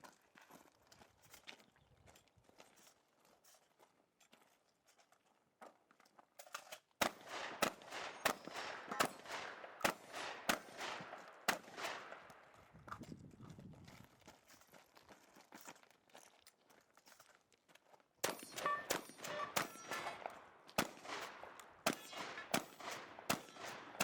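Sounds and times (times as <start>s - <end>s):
shotgun shots with echo: 7.0s - 12.6s, 18.2s - 24.0s
faint clicks and steps: 10.8s - 23.9s.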